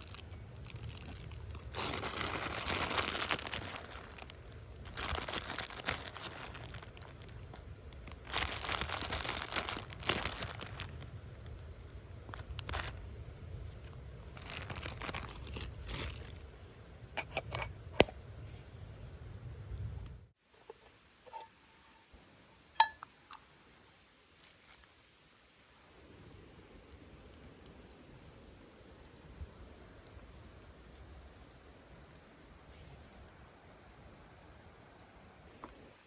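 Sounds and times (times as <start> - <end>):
rustling and crinkling: 0.0 - 11.6, 12.2 - 18.7, 24.2 - 28.3.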